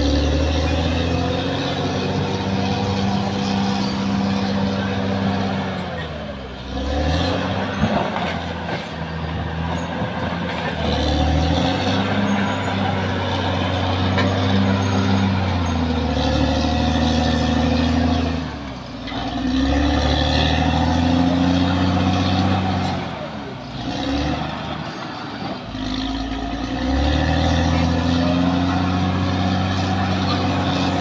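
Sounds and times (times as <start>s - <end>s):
bulldozer diesel engine revving: 0.0s - 31.0s.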